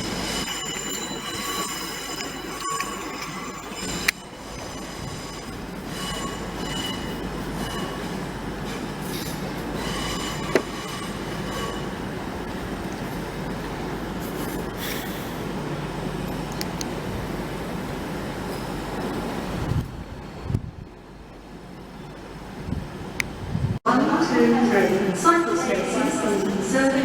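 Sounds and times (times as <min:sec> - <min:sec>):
wheel squeal: 0:00.0 - 0:08.2, 0:09.1 - 0:12.1
train wheels rumbling on rails: 0:00.0 - 0:24.7.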